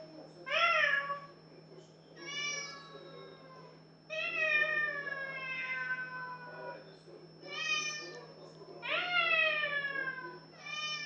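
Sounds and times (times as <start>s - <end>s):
cat yowling: 3.4s - 6.5s, 8.8s - 11.0s.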